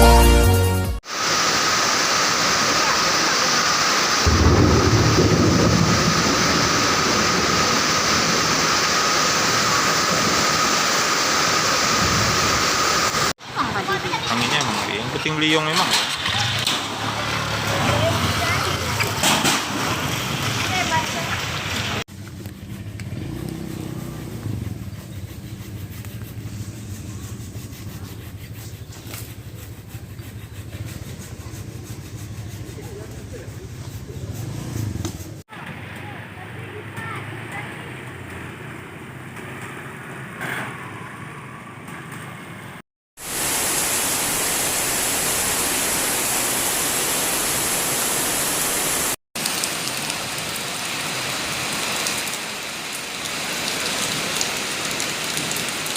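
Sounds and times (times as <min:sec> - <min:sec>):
heavy rain pouring: 0:00.9 - 0:22.1, 0:43.2 - 0:55.9
engine running at low pitch: 0:22.1 - 0:28.1.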